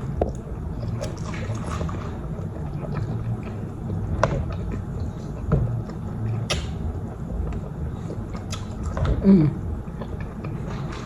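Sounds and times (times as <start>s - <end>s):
steady low rumble: 0.0s - 11.0s
person chewing: 7.5s - 9.2s.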